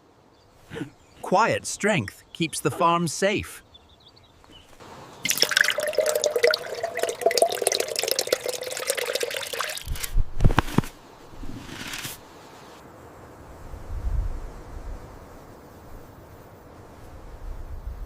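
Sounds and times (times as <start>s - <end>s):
water pouring into a container: 5.2s - 10.1s.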